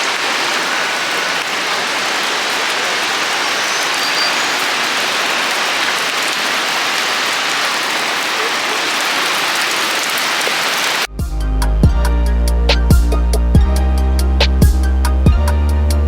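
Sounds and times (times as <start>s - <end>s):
waterfall rushing: 0.0s - 11.1s.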